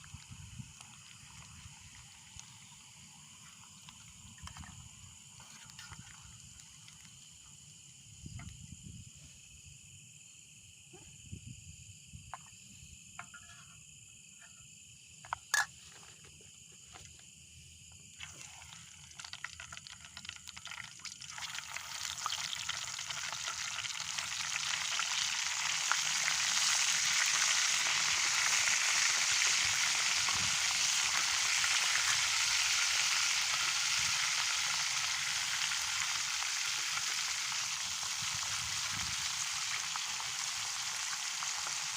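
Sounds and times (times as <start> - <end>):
food sizzling in a pan: 18.2 - 41.9.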